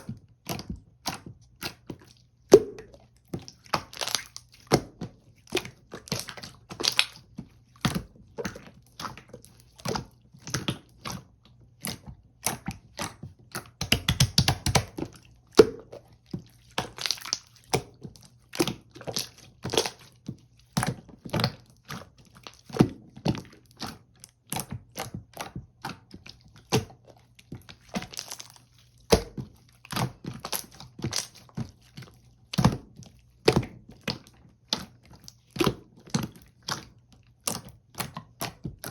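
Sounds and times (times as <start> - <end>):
slime clicking and popping: 12.4 - 16.0.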